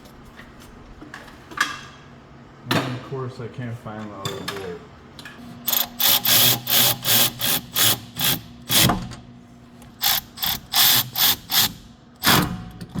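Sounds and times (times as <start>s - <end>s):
ratchet wrench clicking: 5.7s - 8.9s, 10.0s - 11.7s.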